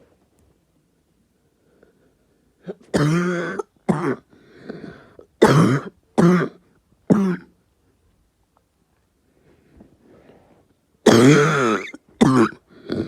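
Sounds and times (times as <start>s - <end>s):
person coughing: 2.7s - 4.2s, 5.4s - 7.5s, 11.1s - 12.6s
noisy breath in: 4.3s - 5.3s.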